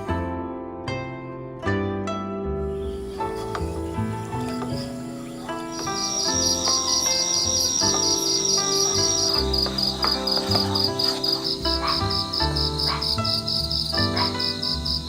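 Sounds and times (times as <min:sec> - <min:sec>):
soft melodic music: 0:00.0 - 0:15.0
crickets chirping: 0:03.0 - 0:15.0.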